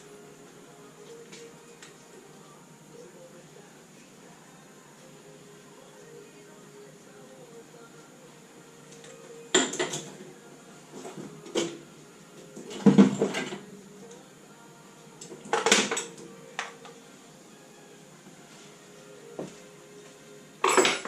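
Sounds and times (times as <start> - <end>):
metal tools clanking: 20.6 - 21.0.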